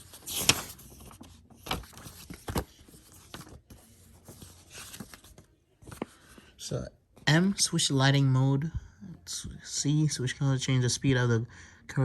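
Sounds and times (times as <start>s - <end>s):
paper booklet rustling: 0.0s - 6.6s.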